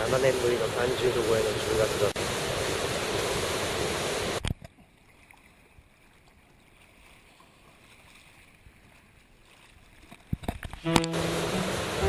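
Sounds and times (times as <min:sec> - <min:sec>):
faint steady hiss: 0:00.0 - 0:04.5, 0:10.8 - 0:12.0
rushing surf and wind: 0:00.0 - 0:04.5, 0:10.8 - 0:12.0.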